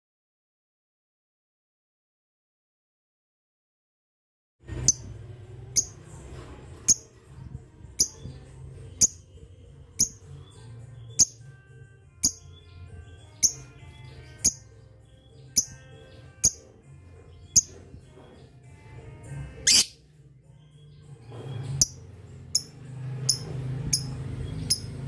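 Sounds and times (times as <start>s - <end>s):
soft rapid bird chatter: 4.7s - 25.0s
lovebird shrill chirps: 19.6s - 20.0s.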